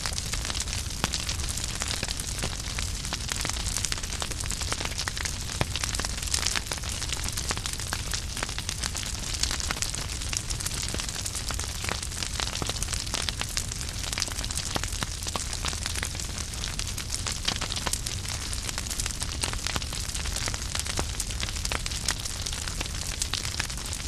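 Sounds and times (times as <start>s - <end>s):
logs crackling and popping: 0.0s - 24.0s
wood fire burning: 0.0s - 24.0s.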